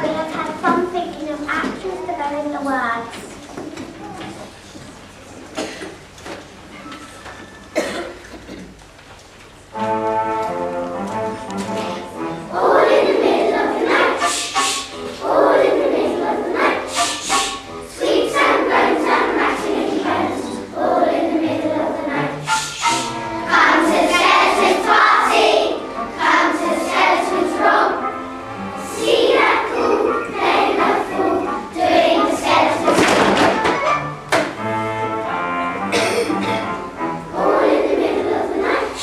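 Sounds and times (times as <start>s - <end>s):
quiet accompaniment: 0.0s - 39.0s
children's song instrumental: 9.7s - 39.0s.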